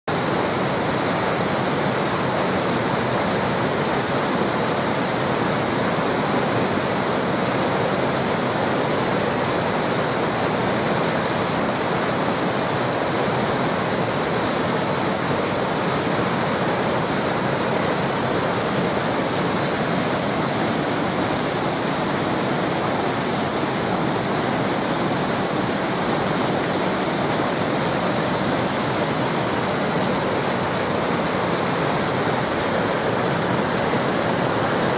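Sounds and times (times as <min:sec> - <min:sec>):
waterfall rushing: 0:00.1 - 0:34.9.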